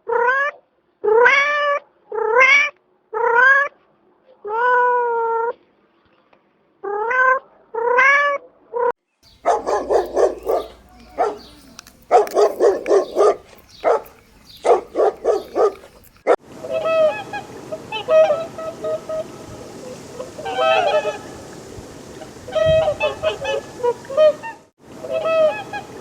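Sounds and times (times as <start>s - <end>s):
rapid repeated animal calls: 9.3s - 16.4s
honking calls: 9.3s - 19.3s.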